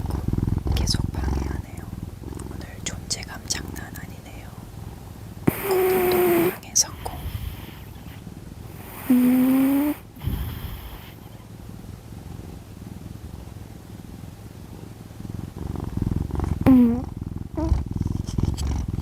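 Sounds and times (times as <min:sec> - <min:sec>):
cat snoring: 0:00.0 - 0:04.3, 0:05.4 - 0:11.5, 0:15.2 - 0:19.0.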